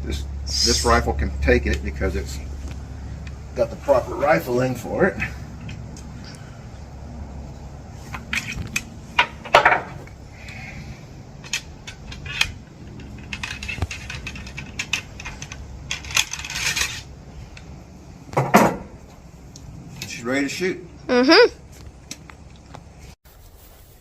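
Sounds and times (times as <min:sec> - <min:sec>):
metallic clinks taps and scrapes: 0:11.4 - 0:17.7.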